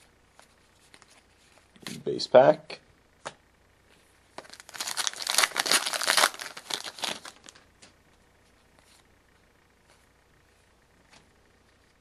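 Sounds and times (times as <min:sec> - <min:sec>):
card pack wrapper tearing: 0:04.4 - 0:07.6.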